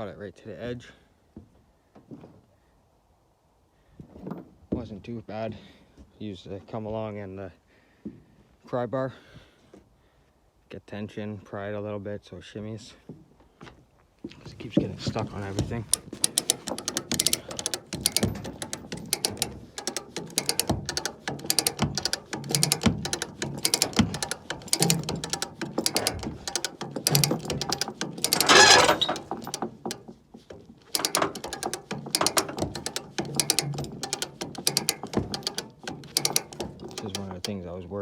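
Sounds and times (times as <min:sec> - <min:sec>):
ratchet clicking under load: 0:15.4 - 0:37.6.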